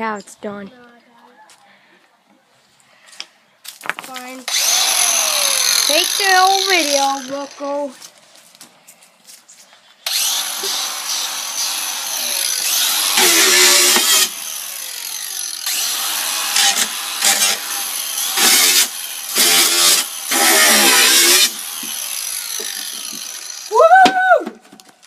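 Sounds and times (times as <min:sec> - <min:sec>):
disc grinding into material: 0:04.5 - 0:07.6, 0:10.1 - 0:14.4, 0:18.3 - 0:23.7
angle grinder running: 0:04.5 - 0:07.9, 0:10.1 - 0:23.8.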